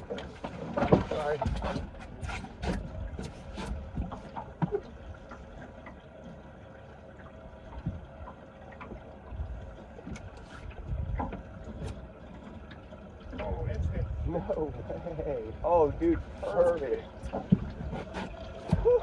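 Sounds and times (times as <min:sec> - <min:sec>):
wind gusts on microphone: 0:13.4 - 0:14.9.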